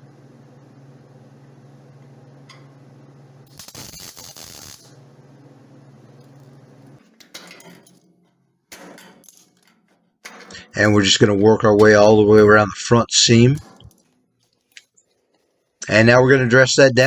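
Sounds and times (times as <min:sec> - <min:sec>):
steady low hum: 0:00.0 - 0:17.0
welder crackling hiss: 0:03.5 - 0:05.0.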